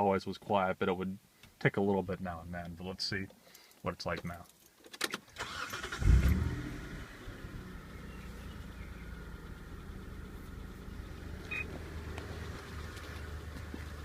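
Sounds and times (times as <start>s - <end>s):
car engine starting and idling: 5.3s - 14.0s
brief beep: 11.5s - 11.7s.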